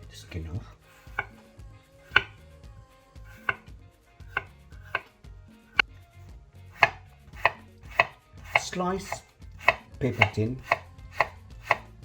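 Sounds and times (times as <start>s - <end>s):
knife cutting ginger: 0.0s - 2.5s, 3.2s - 5.9s, 6.7s - 12.0s
knife knocking on chopping board: 2.1s - 2.4s, 3.3s - 3.7s, 4.3s - 5.1s, 6.8s - 11.8s.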